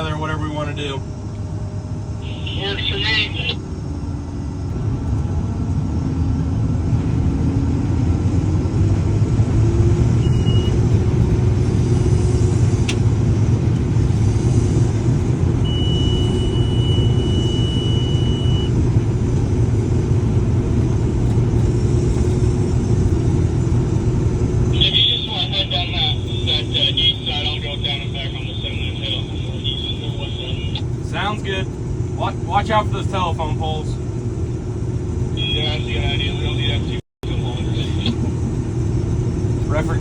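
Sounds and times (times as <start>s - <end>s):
diesel engine rumbling: 0.0s - 40.0s
short high beep: 15.7s - 18.7s.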